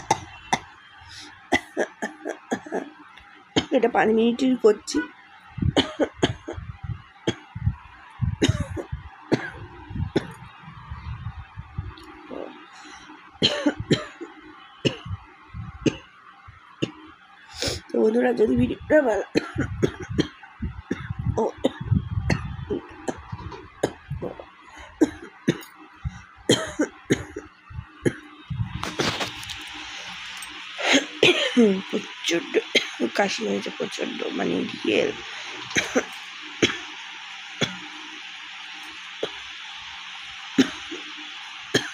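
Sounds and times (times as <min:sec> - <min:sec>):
woman coughing: 0:01.5 - 0:02.9, 0:05.7 - 0:06.7, 0:08.4 - 0:10.4, 0:13.4 - 0:14.3, 0:19.3 - 0:22.5, 0:25.0 - 0:25.7, 0:26.5 - 0:27.5, 0:30.8 - 0:32.0, 0:32.7 - 0:33.1, 0:35.7 - 0:36.9, 0:40.6 - 0:41.0.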